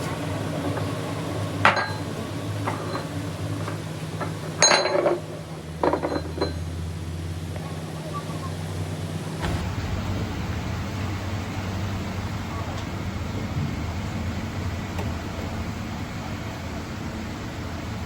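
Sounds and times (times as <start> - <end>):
low machine hum: 9.4 - 18.0.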